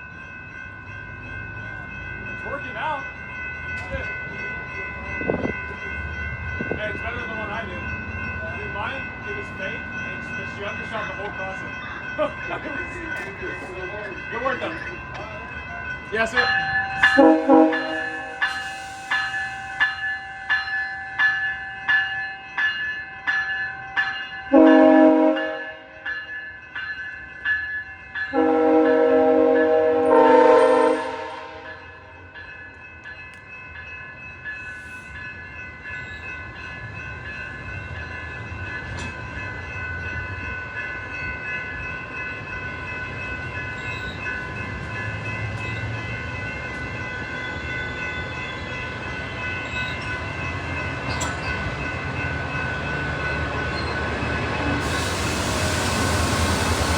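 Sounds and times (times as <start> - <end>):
bell ringing: 0.0 - 55.5
train rumbling past: 0.0 - 56.9
train horn blasts: 17.1 - 18.3, 24.5 - 25.9, 28.3 - 32.0.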